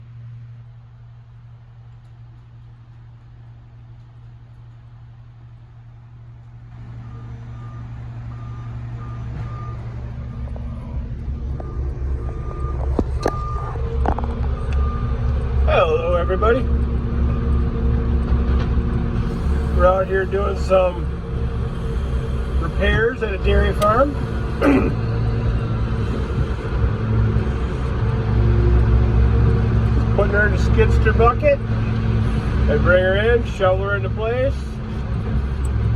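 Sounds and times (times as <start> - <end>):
diesel engine running: 0.0 - 35.9
reversing alarm beeping: 6.9 - 32.6.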